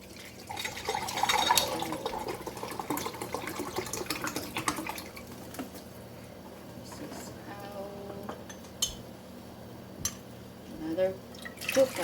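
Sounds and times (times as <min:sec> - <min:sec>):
water gurgling into a pot: 0:00.0 - 0:05.6, 0:11.3 - 0:12.0.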